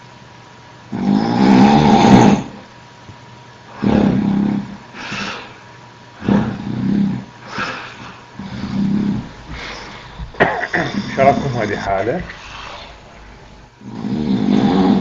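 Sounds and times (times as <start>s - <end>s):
man snoring loudly: 0.9s - 2.6s, 3.8s - 4.8s, 6.2s - 7.7s, 8.4s - 9.3s, 13.8s - 15.0s.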